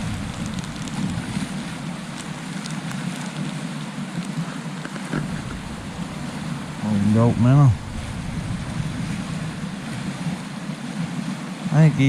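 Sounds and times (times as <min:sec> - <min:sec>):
stream rushing: 0:00.0 - 0:12.0
wind buffeting microphone: 0:00.0 - 0:12.0.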